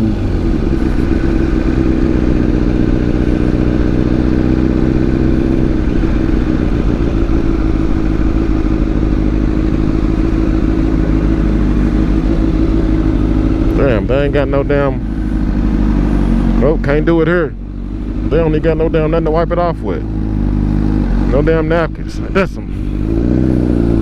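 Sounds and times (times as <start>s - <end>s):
motorcycle engine running steadily: 0.0s - 24.0s.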